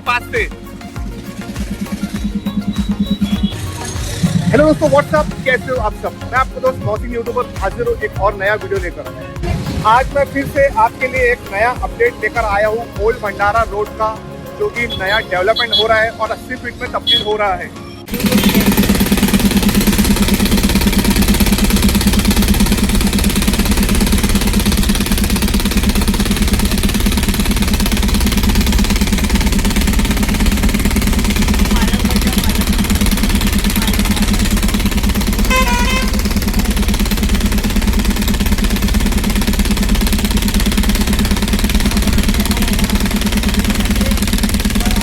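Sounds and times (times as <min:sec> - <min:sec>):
engine idling: 0:00.0 - 0:45.0.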